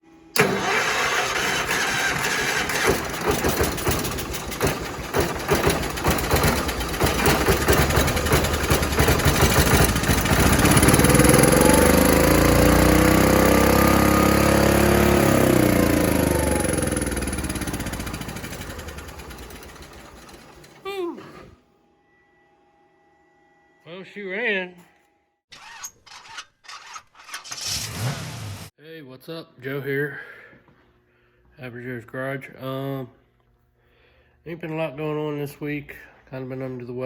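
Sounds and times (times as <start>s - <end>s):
tractor engine sputtering and running: 0.4s - 20.8s.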